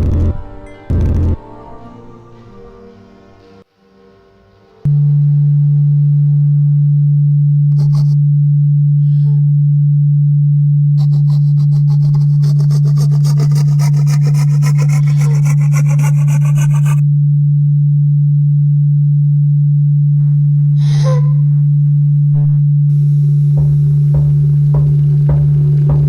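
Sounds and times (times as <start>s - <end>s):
low pure tone: 0.0s - 12.2s, 17.0s - 26.0s
rasping rub with ticks: 11.0s - 17.0s.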